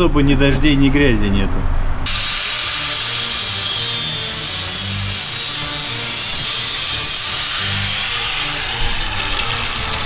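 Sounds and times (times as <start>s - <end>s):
angle grinder cutting steel: 2.1s - 10.0s.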